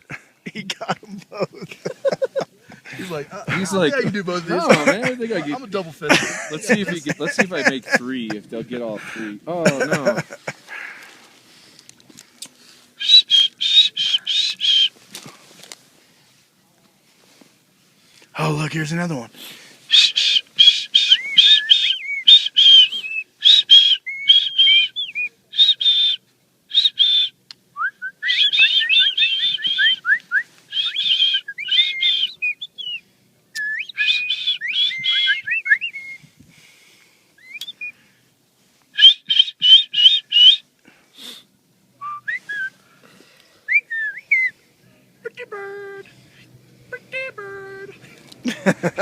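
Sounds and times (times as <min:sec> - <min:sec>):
small birds calling: 0:12.4 - 0:15.0, 0:19.9 - 0:27.4, 0:28.2 - 0:36.3, 0:37.4 - 0:38.1, 0:39.0 - 0:40.7.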